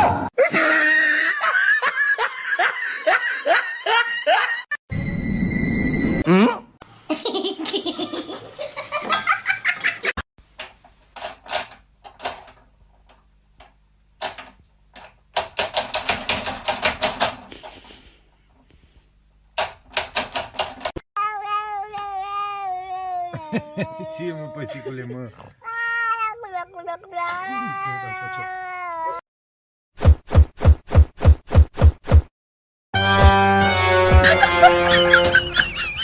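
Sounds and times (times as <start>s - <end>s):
people laughing: 0.4s - 4.7s, 34.1s - 36.0s
cat meowing: 25.6s - 29.2s.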